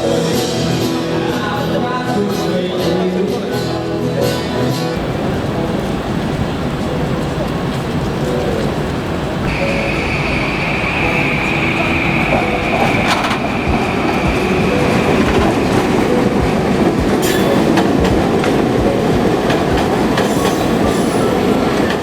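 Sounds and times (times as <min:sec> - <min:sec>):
high whine: 0:09.4 - 0:20.0.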